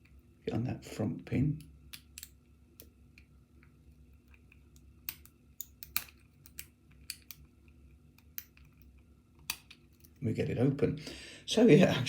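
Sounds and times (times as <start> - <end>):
lock pick clicking and scraping: 1.9 - 2.4, 4.2 - 7.5.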